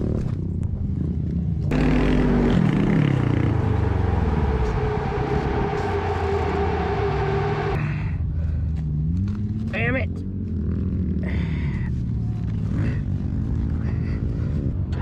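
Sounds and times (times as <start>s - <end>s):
vehicle engine running: 0.2s - 15.0s
heavy rushing noise: 1.7s - 8.1s.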